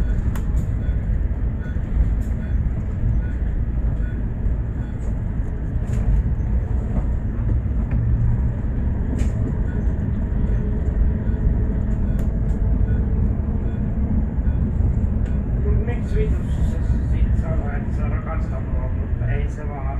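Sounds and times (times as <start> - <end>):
bus engine and road rumble: 0.0 - 19.9.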